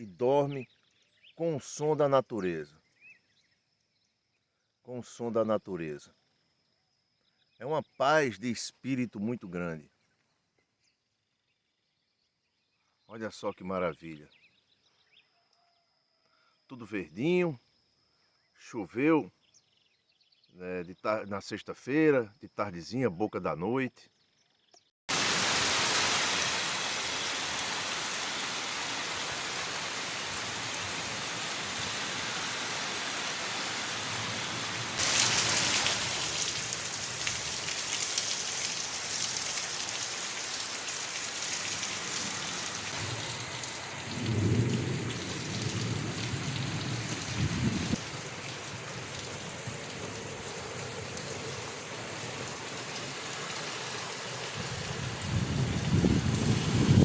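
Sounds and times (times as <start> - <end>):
heavy rain falling: 25.1 - 57.0
thunder rumbling: 43.0 - 49.0.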